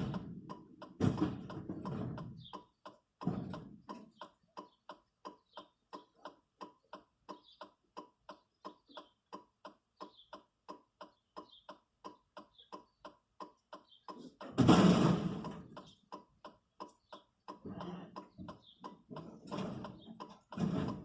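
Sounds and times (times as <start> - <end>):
light mechanical ticking: 2.1 - 14.6, 15.4 - 21.0.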